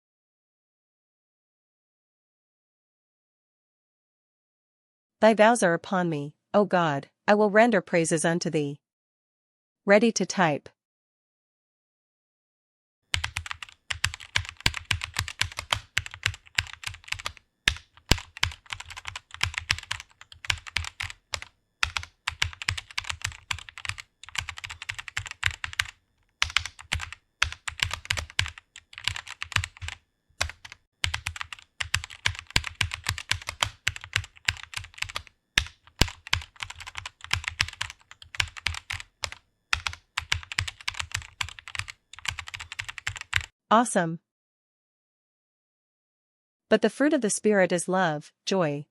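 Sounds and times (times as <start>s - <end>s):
rapid typing on keyboard: 13.1s - 43.5s.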